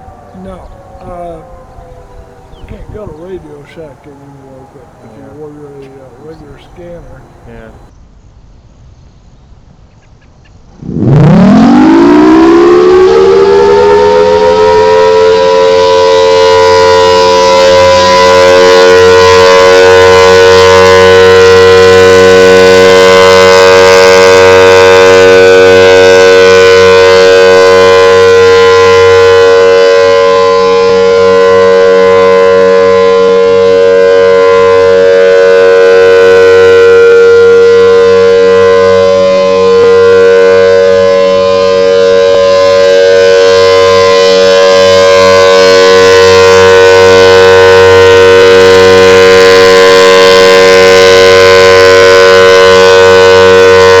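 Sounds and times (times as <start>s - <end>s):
tornado siren wailing: 0.0s - 7.9s, 10.8s - 54.0s.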